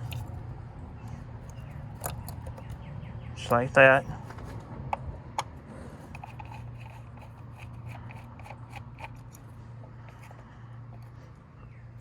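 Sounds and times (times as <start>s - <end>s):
steady low hum: 0.0s - 12.0s
small plastic clicks and rubs: 6.1s - 9.5s.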